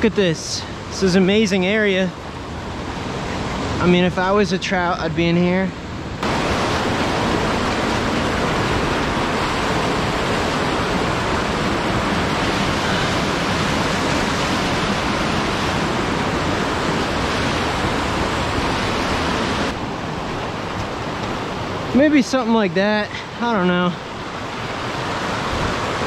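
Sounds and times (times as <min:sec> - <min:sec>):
waterfall rushing into pool: 0:06.2 - 0:26.0.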